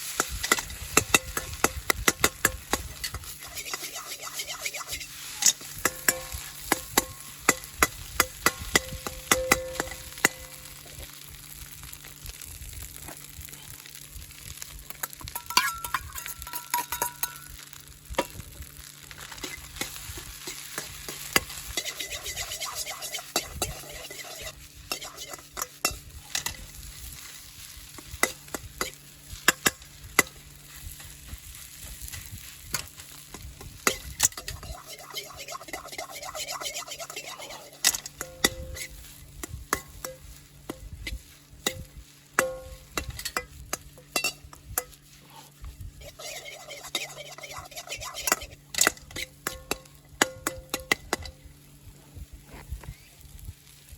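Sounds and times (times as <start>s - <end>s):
utensil scraping a pan: 0.0s - 10.6s, 19.2s - 49.8s
food sizzling in a wok: 0.0s - 53.9s.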